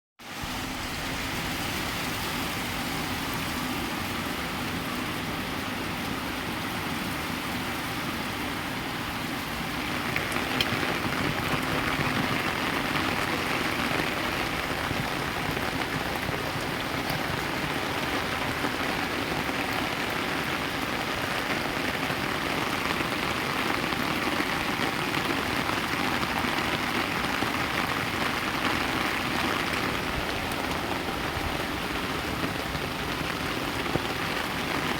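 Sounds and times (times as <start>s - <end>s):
heavy rain: 0.2s - 34.9s.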